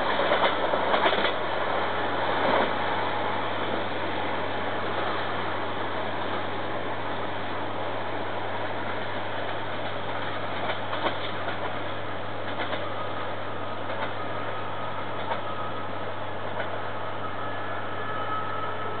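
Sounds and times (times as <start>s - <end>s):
wheels clicking over rails: 0.0s - 1.5s, 8.9s - 13.0s, 13.8s - 14.2s
train running: 0.0s - 19.0s
faint high squeal: 14.0s - 19.0s.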